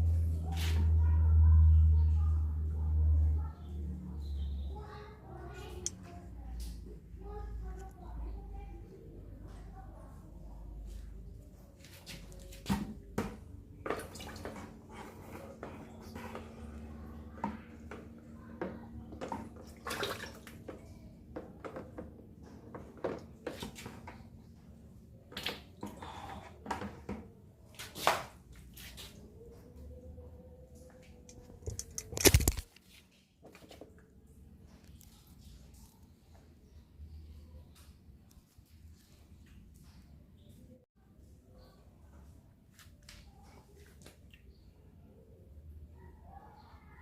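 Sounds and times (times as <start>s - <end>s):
water splashing and trickling: 13.8s - 15.5s, 19.3s - 20.8s.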